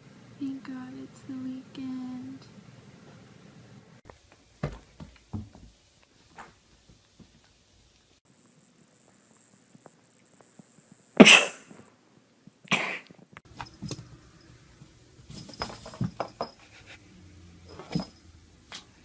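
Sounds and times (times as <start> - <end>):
person sneezing: 11.2 - 11.7, 12.7 - 13.1.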